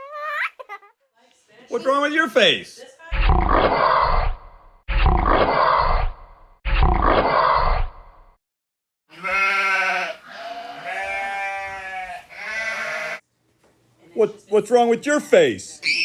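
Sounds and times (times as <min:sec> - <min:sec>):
wavering bleat-like calls: 0:09.1 - 0:13.2.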